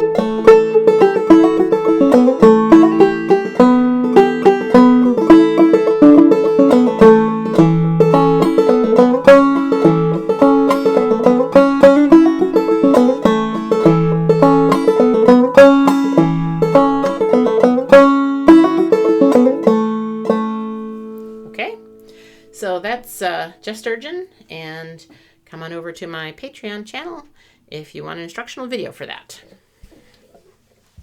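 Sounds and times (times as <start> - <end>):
banjo playing fast tune: 0.0 - 24.0.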